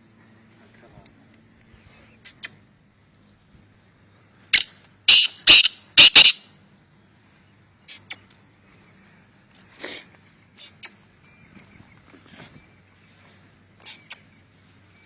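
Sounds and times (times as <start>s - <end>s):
francolin calling: 4.4s - 6.5s.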